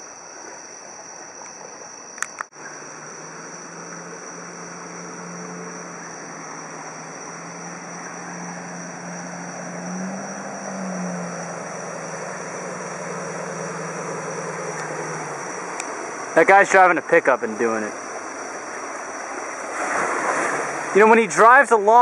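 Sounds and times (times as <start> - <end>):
insects trilling: 0.0 - 22.0
truck engine running: 2.6 - 19.0.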